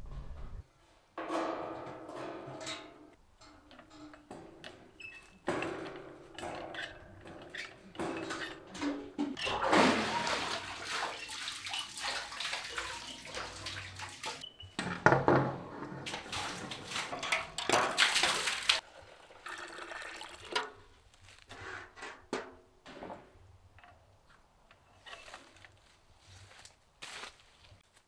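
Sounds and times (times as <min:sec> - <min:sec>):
water splashing and sloshing: 0:03.5 - 0:14.5, 0:16.0 - 0:21.6.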